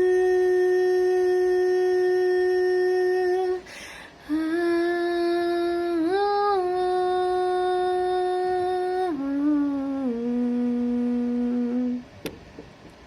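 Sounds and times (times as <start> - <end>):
woman humming: 0.0 - 12.1
woman breathing in: 3.6 - 4.3.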